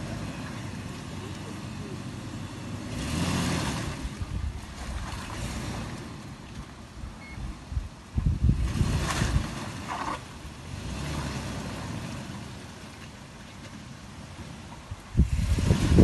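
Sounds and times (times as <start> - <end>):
car engine rumble: 0.0 - 16.0
wind noise on microphone: 3.8 - 5.8, 7.0 - 10.2, 14.8 - 16.0.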